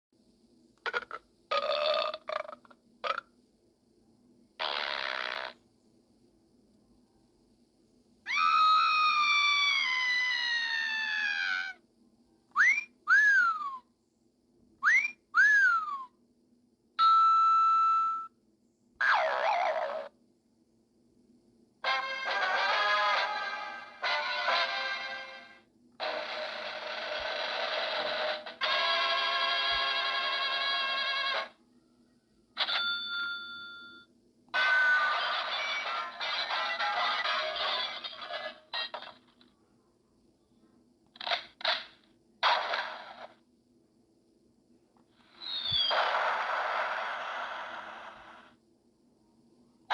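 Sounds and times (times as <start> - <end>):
long descending whistle: 12.6 - 13.8, 14.8 - 16.1, 17.0 - 18.4, 45.4 - 46.0
wolf whistles: 12.6 - 13.8, 14.8 - 16.1, 17.0 - 18.3, 45.3 - 46.0
bell-like ring: 32.6 - 34.1.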